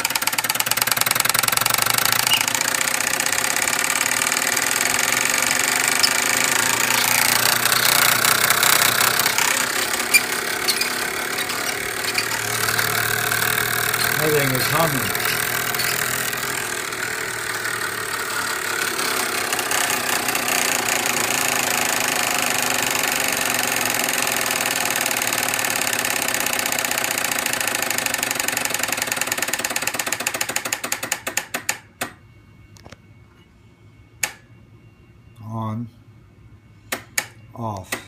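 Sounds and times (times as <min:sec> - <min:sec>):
motor buzzing chatter: 0:00.0 - 0:28.1.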